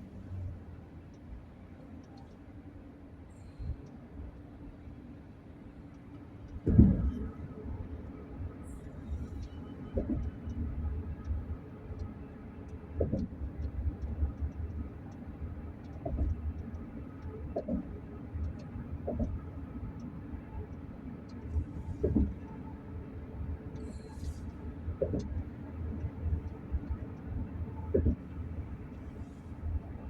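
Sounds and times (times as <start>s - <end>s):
road rumble inside vehicle: 0.0s - 30.0s
thumps from road bumps: 6.6s - 7.2s, 10.0s - 10.3s, 13.0s - 13.3s, 16.0s - 16.4s, 19.1s - 19.4s, 22.0s - 22.4s, 25.0s - 25.4s, 27.9s - 28.3s
faint ticks and rattles: 8.8s - 30.0s.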